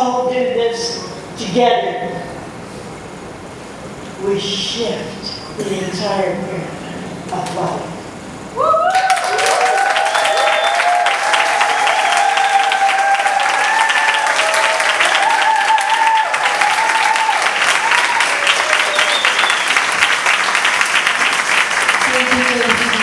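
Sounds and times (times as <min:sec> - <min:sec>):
audience applauding: 0:08.8 - 0:23.0.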